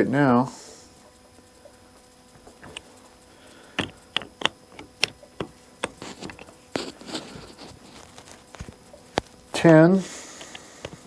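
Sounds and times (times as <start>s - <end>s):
torque screwdriver clicking: 3.8s - 7.2s.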